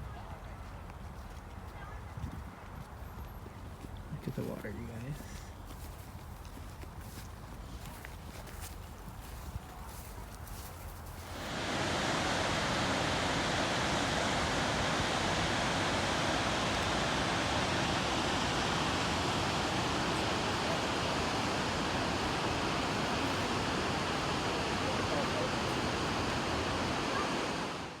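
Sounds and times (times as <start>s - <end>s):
rushing water: 11.2s - 28.0s.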